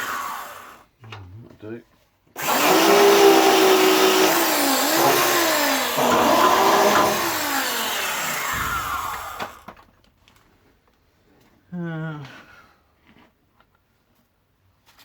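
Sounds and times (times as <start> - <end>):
electric grinder on sheet steel: 0.0 - 0.8, 2.4 - 9.6.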